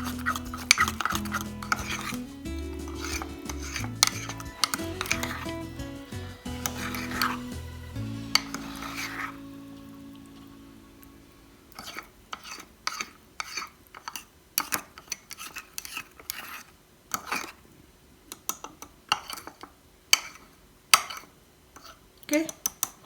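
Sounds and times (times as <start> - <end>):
spoon scraping and clinking in mug: 0.0 - 5.6, 6.6 - 7.5.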